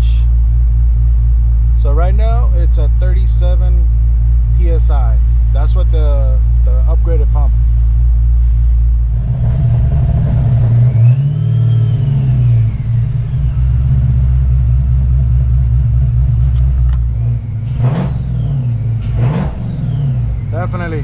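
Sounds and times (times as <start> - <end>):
supercharger whine: 0.0 - 21.0
engine revving: 9.1 - 21.0.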